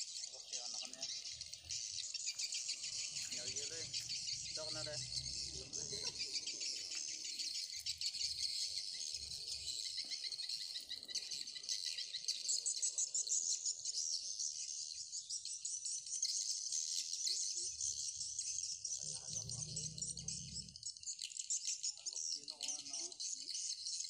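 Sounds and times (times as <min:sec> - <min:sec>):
crickets chirping: 0:00.0 - 0:11.6, 0:18.9 - 0:20.9.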